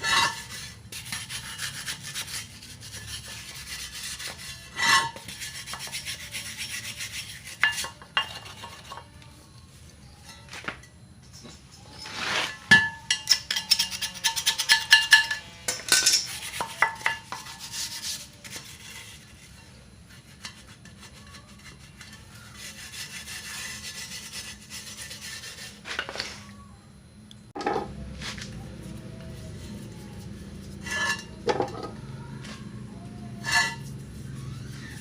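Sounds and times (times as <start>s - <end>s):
scraping on metal rim: 0.0s - 9.1s, 29.4s - 32.6s, 33.3s - 35.0s.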